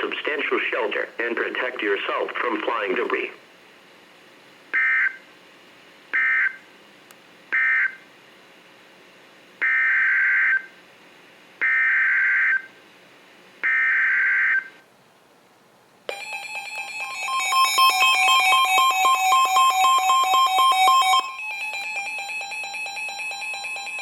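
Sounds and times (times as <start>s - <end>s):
two-tone attention signal: 16.1s - 24.0s.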